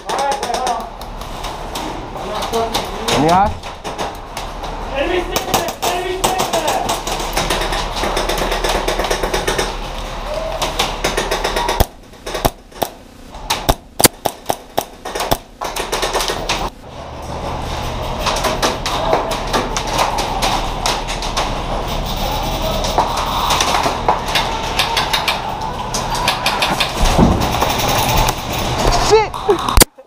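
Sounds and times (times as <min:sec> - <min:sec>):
airsoft guns firing: 0:05.4 - 0:09.8, 0:10.7 - 0:16.5.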